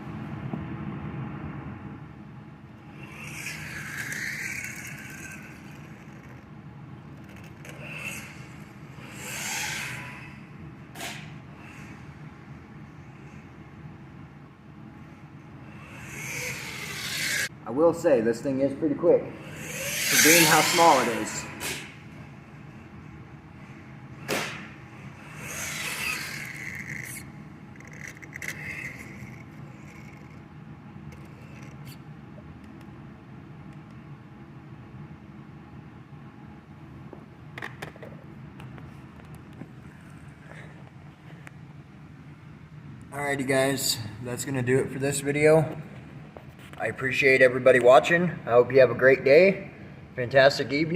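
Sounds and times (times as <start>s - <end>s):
small electric motor whining: 2.9s - 6.4s, 7.2s - 12.2s, 15.6s - 17.5s, 19.3s - 22.0s, 24.9s - 30.4s.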